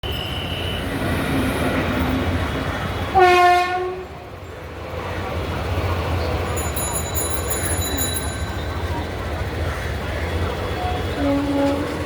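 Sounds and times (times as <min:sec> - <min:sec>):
train rumbling: 0:00.0 - 0:12.0
train horn blast: 0:03.1 - 0:04.0, 0:11.1 - 0:12.0.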